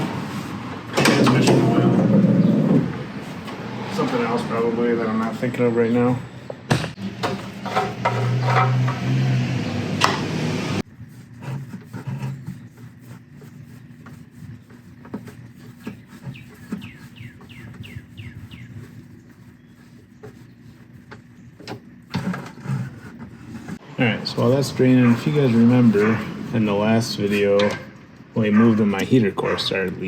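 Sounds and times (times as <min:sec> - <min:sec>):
bird chirping: 0:15.8 - 0:19.9.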